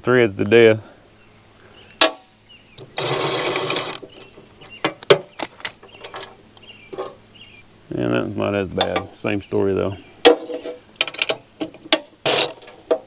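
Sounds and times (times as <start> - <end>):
metal bolts clinking: 2.0 - 7.2, 8.8 - 9.1, 10.2 - 13.0.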